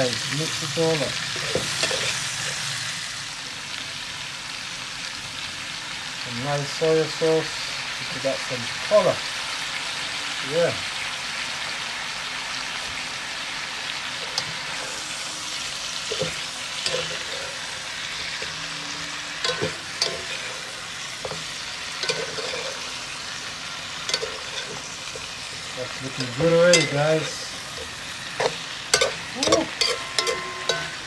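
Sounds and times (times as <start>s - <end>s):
food sizzling in a pan: 0.0s - 31.0s
utensil knocking and scraping pan: 1.1s - 2.6s, 14.2s - 15.2s, 16.0s - 18.6s, 19.4s - 31.0s.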